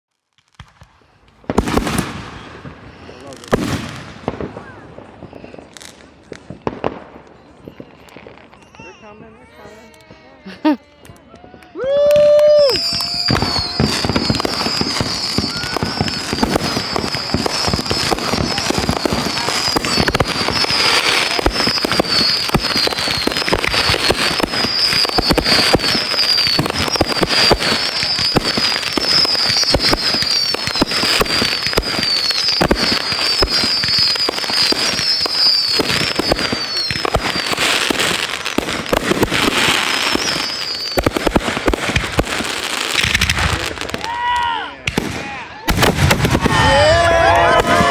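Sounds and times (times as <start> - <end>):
fireworks crackling: 0.2 - 47.9
high falling whistles: 12.4 - 37.5, 39.8 - 41.2.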